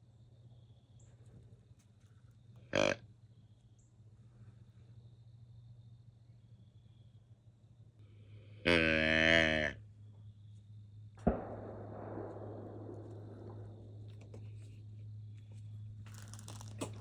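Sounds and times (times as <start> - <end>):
deep buzzing deer grunt call: 2.6 - 3.1, 8.3 - 9.8.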